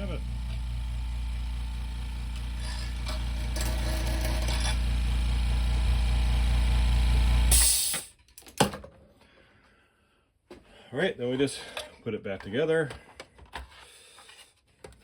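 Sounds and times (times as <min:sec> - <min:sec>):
air compressor motor humming: 0:00.0 - 0:08.0.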